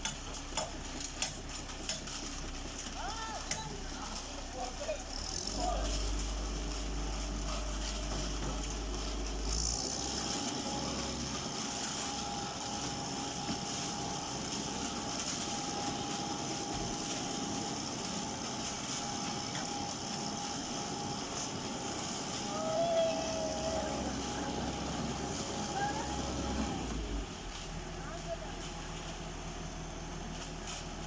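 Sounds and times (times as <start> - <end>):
concrete mixer truck running: 0.0 - 31.0
thin steady whine: 0.0 - 31.0.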